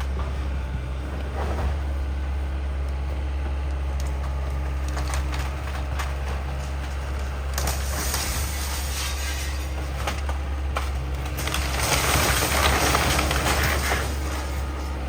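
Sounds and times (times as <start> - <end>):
heavy machine engine running: 0.0 - 15.0
debris crunching and splintering: 3.8 - 15.0.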